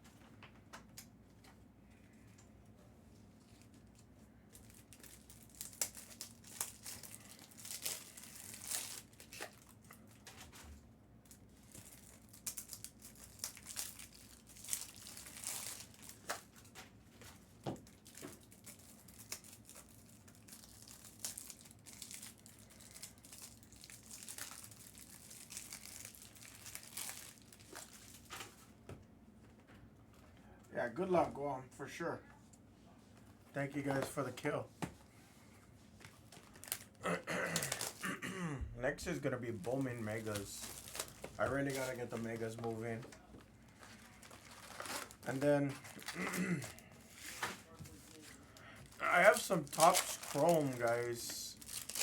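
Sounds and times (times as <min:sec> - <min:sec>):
foil wrappers crinkling and tearing: 0:03.4 - 0:10.6, 0:11.2 - 0:28.6, 0:36.0 - 0:38.2, 0:38.9 - 0:52.0.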